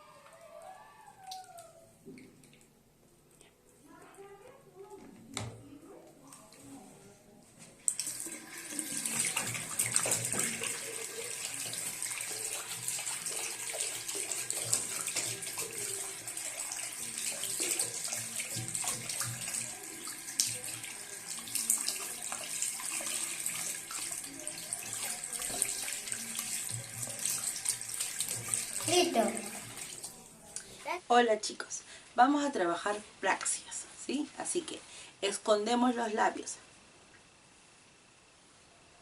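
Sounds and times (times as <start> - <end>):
splashes of hand washing: 7.8 - 30.8
tap water running into sink: 7.9 - 30.7.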